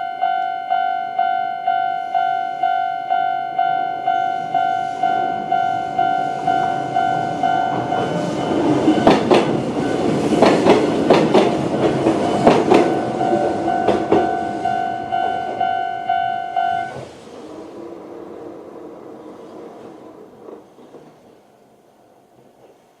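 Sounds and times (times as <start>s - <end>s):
level-crossing alarm pulsed tone: 0.0s - 17.0s
train wheels clacking on rail joints: 4.4s - 15.8s, 16.6s - 21.4s.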